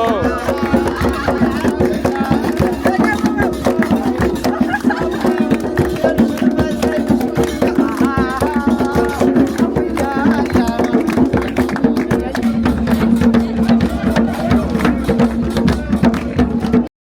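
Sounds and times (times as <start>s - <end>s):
wavering melody: 0.0s - 11.0s
fast hand drum beats: 0.0s - 16.9s.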